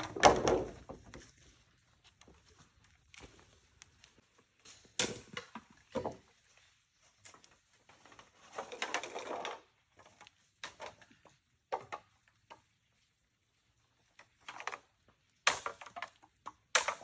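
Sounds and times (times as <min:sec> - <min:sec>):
bamboo scraping: 0:00.0 - 0:17.0
bamboo knocks and taps: 0:05.0 - 0:06.4.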